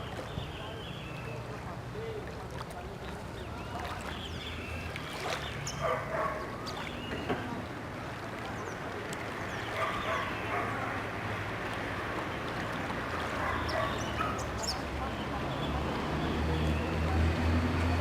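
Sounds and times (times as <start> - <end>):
birds chirping: 0.0 - 1.6, 2.9 - 7.8, 8.4 - 11.1, 13.3 - 17.1
distant bird calls: 3.1 - 7.7, 8.5 - 11.1, 12.2 - 17.1.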